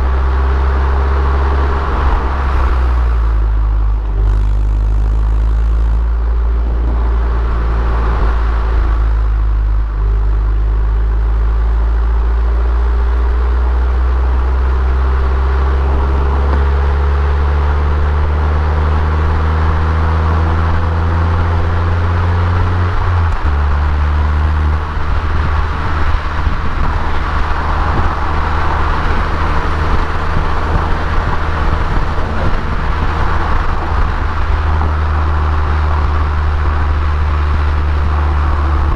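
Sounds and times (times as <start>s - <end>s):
car engine running: 0.0s - 38.9s.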